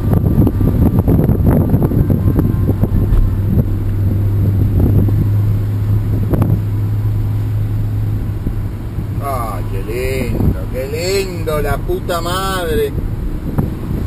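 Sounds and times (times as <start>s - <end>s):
van engine humming: 0.0s - 14.0s.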